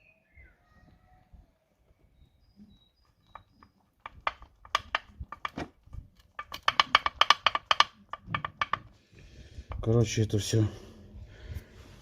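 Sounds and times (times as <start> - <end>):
metal parts clicking and knocking: 3.3 - 9.0.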